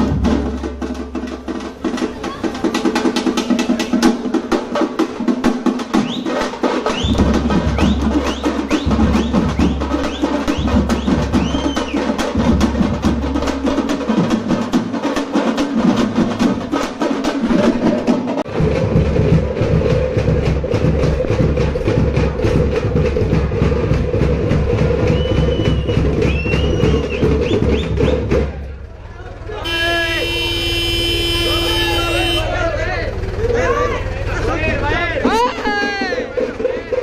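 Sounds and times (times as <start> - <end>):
frame drums beaten with sticks: 0.0 - 28.8, 34.5 - 37.0
short rising whistles: 6.0 - 12.1, 25.0 - 28.3.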